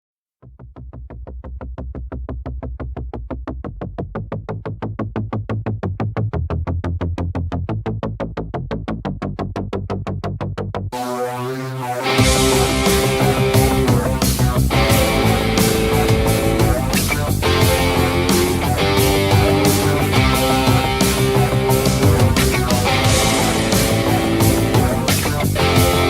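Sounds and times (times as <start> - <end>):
bass line: 0.5 - 26.0
synthesizer pulsing: 10.9 - 26.0.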